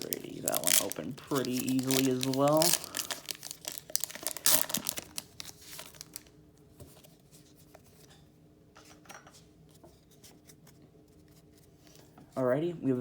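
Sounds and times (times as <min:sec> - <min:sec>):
cards being handled: 0:00.0 - 0:06.2
foil wrapper crinkling: 0:00.0 - 0:06.3.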